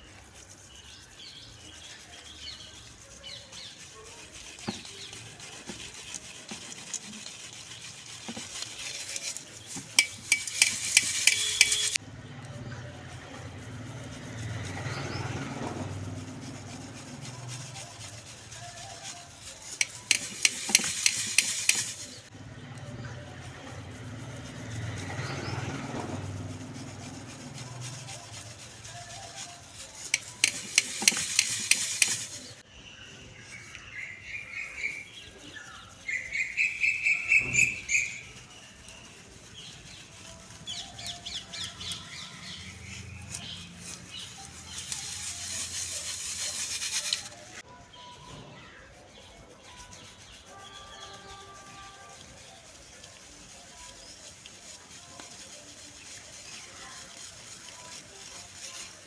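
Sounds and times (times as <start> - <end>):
dry clumps crumbling: 0.0 - 12.0, 13.4 - 22.4, 23.4 - 32.6, 37.4 - 47.7
birds chirping: 0.0 - 47.7.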